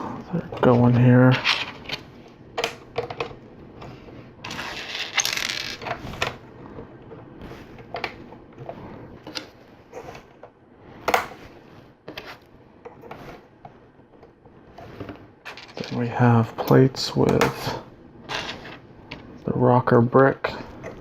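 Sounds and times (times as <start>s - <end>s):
plastic bricks rattling: 15.5s - 16.0s.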